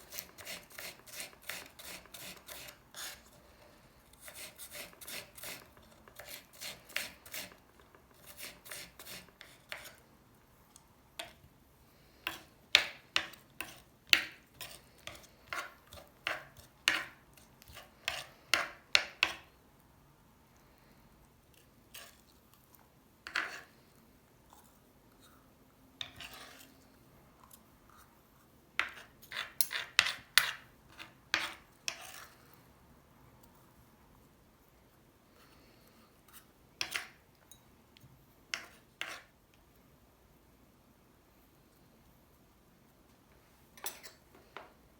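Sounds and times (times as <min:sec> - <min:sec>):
kitchen utensil scraping food: 0:00.0 - 0:10.0, 0:12.2 - 0:19.5, 0:21.9 - 0:22.3, 0:23.2 - 0:23.8, 0:26.0 - 0:26.8, 0:28.8 - 0:32.5, 0:38.5 - 0:39.3.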